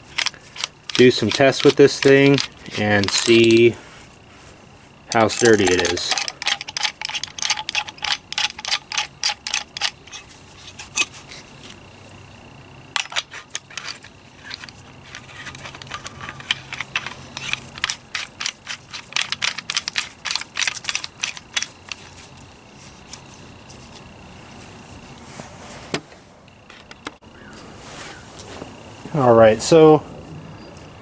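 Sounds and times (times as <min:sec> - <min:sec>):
metallic clicking and clinking: 0:00.0 - 0:03.8, 0:05.1 - 0:11.8, 0:13.0 - 0:22.3.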